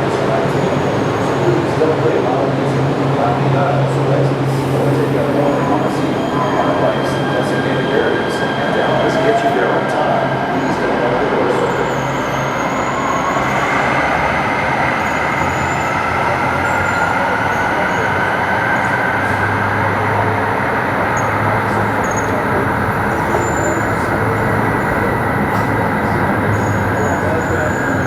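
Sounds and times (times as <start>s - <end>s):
train rumble: 0.0s - 28.0s
light-rail train motor whine: 14.7s - 28.0s.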